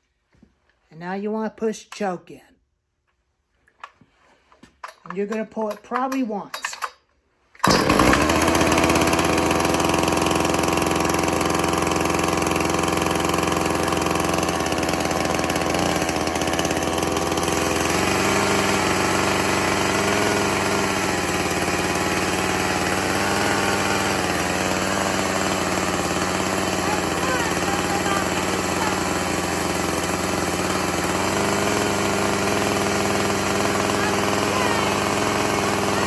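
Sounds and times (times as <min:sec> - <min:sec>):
chainsaw cord pull: 0:04.6 - 0:36.0
chainsaw idling: 0:07.6 - 0:36.0.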